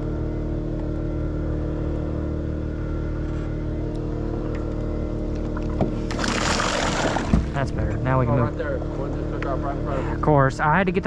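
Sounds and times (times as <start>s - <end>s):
boat engine running: 0.0s - 11.0s.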